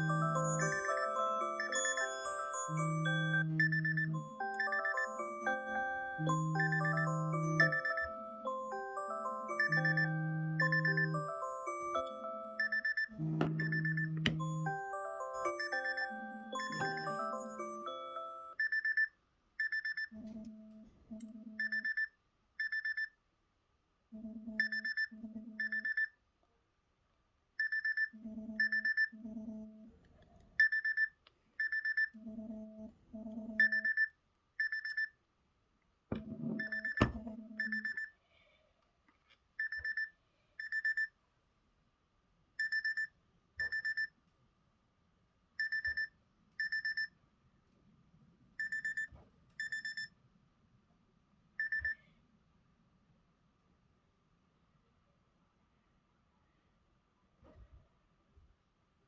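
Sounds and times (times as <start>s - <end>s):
melodic alarm tune: 0.0s - 18.6s.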